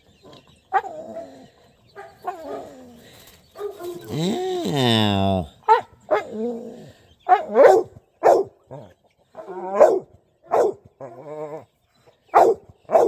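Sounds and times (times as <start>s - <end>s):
dog barking: 2.0s - 2.8s, 3.6s - 4.1s, 5.6s - 6.4s, 7.3s - 8.6s, 9.4s - 10.8s, 12.3s - 13.0s
long buzzy dog call: 4.0s - 5.5s.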